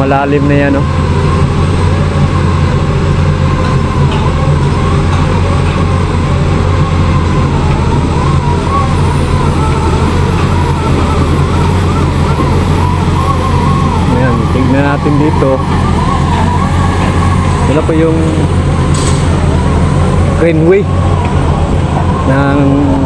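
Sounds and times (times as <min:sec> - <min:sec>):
diesel construction machinery running: 0:00.0 - 0:23.0.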